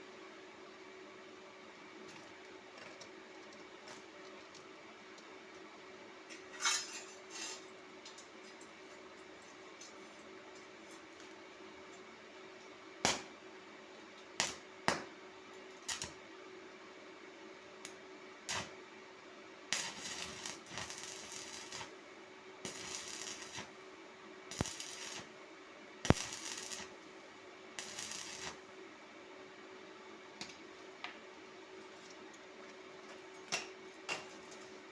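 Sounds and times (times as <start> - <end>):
faint steady hum: 0.0 - 34.9
crackling hiss bursts: 22.7 - 23.8, 24.5 - 25.3, 26.1 - 27.0, 27.8 - 28.6.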